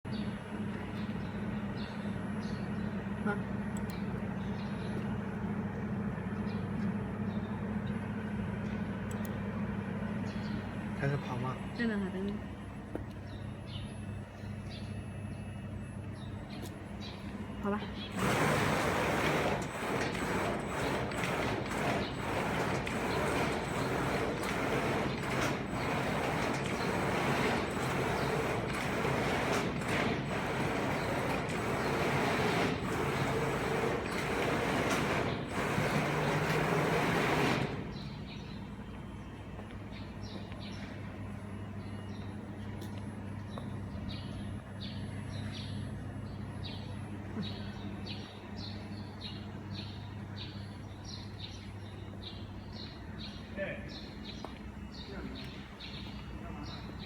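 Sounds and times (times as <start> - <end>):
low machine hum: 0.0 - 57.0
laser cutter rushing whirr: 18.0 - 38.2.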